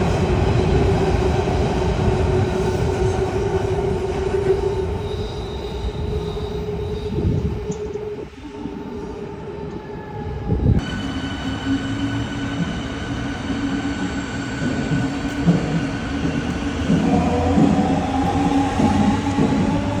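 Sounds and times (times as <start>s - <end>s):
electric train whining tones: 0.0s - 20.0s
train wheels rumbling: 10.4s - 20.0s.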